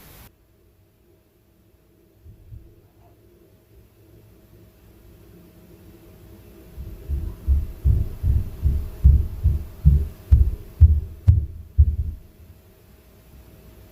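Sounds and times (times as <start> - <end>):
footsteps thudding through ceiling: 6.8 - 12.4.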